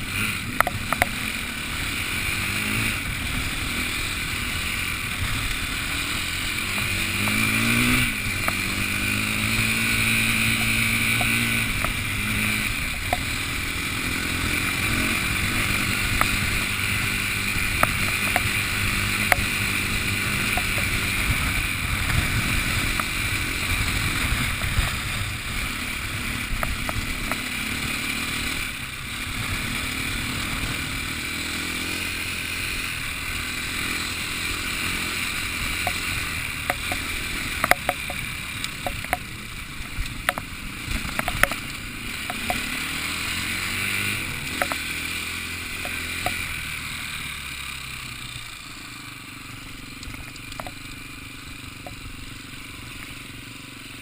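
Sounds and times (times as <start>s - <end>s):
engine changing speed: 0.0s - 48.7s
steady rushing noise: 0.0s - 53.7s
sharp ticks: 0.3s - 2.1s, 2.9s - 28.8s, 33.8s - 46.6s, 49.9s - 52.2s.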